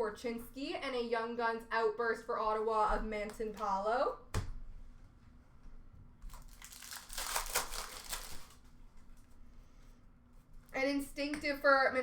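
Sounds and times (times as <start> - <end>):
wrapper tearing and crinkling: 6.3 - 8.7.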